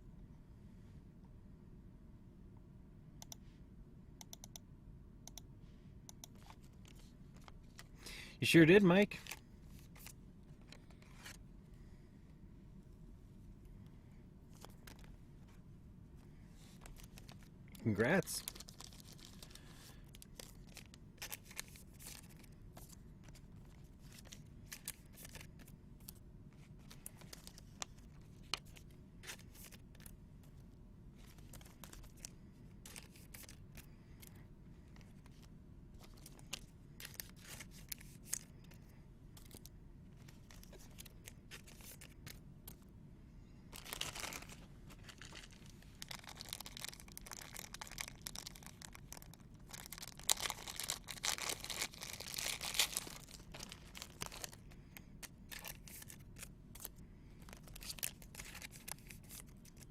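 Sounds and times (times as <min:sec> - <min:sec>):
wrapper crinkling: 0:18.1 - 0:23.4, 0:43.7 - 0:59.9.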